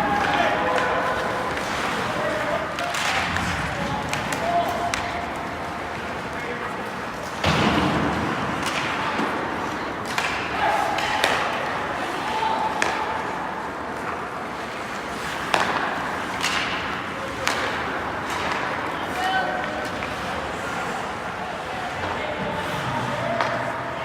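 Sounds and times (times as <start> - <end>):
voices of people: 0.0 - 15.0, 16.7 - 24.0
stick and puck clacks: 0.0 - 21.3, 21.9 - 24.0
skates scraping over ice: 0.0 - 24.0.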